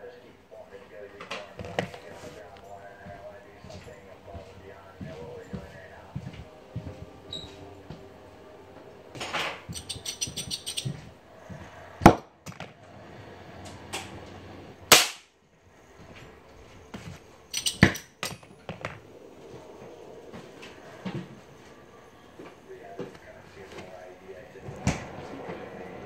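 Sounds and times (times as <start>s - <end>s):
metal clicks and knocks on pipes: 9.7s - 10.9s, 17.5s - 18.4s.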